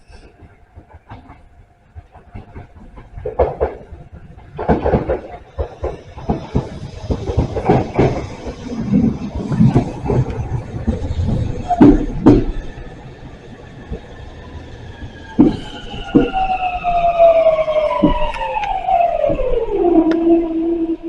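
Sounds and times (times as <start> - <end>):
train wheels knocking on rails: 0.4 - 20.2
traction motor whine: 5.4 - 21.0.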